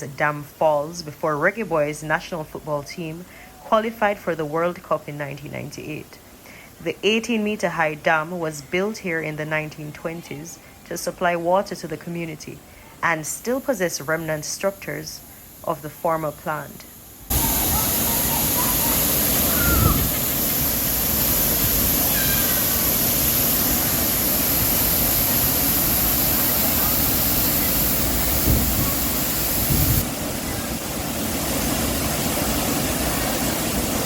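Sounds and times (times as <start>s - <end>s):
waterfall rushing: 17.0s - 34.0s.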